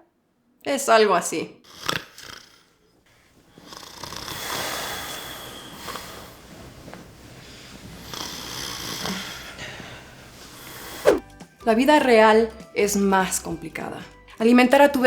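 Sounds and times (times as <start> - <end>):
man snoring: 1.7 - 2.8, 3.6 - 6.5, 8.0 - 9.6, 10.4 - 11.2.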